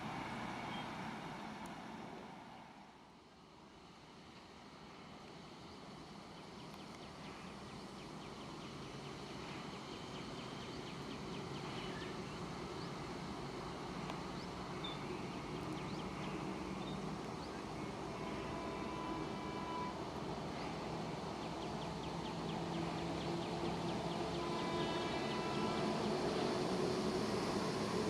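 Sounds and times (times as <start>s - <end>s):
approaching train rumble: 0.0s - 28.0s
faint birds chirping: 5.7s - 26.5s.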